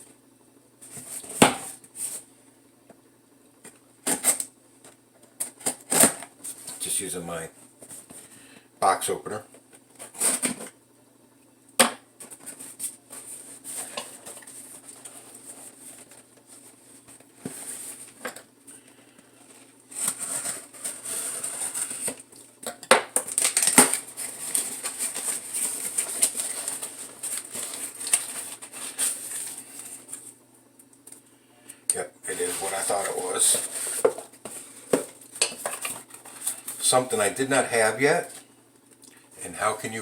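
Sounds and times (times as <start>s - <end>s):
cardboard rustling: 12.2s - 18.2s, 19.3s - 22.3s, 23.3s - 30.3s, 32.3s - 36.8s.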